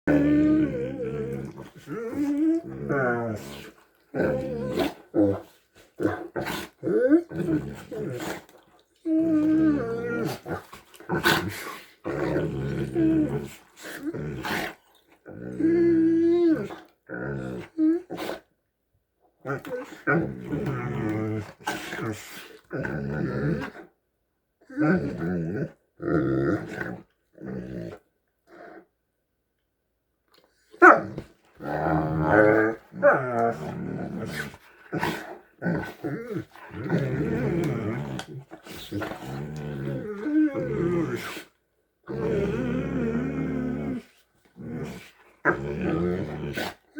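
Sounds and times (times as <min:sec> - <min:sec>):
dogs groaning growls: 0:00.0 - 0:18.5, 0:19.4 - 0:23.9, 0:24.7 - 0:28.9, 0:30.7 - 0:46.9.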